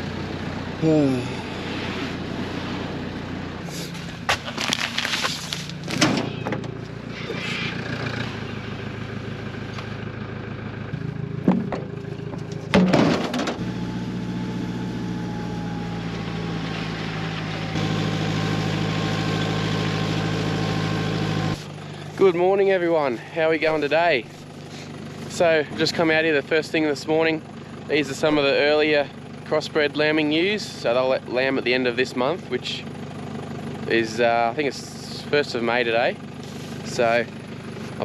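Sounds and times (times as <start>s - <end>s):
vehicle engine running: 0.0s - 38.0s
sharp knocks and rattles: 11.4s - 13.6s.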